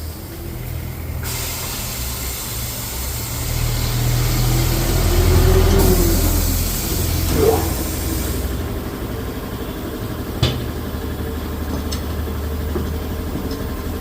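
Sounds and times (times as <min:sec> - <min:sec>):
workshop machinery humming: 0:00.0 - 0:14.0
air hissing: 0:01.1 - 0:08.6.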